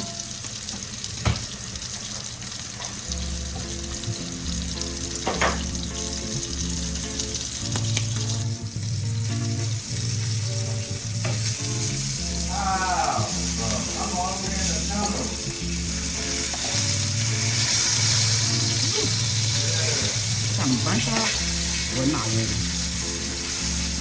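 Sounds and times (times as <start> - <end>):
food sizzling in a pan: 0.0 - 24.0
background music with low bass: 3.0 - 24.0.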